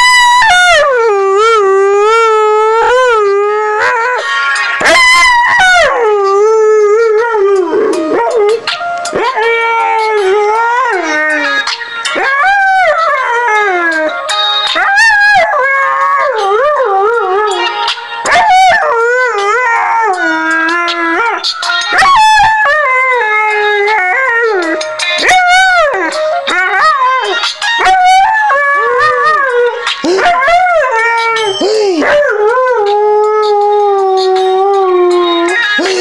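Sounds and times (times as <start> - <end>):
song played on a phone: 0.8 - 36.0
dog howling: 9.2 - 14.1, 14.8 - 35.5.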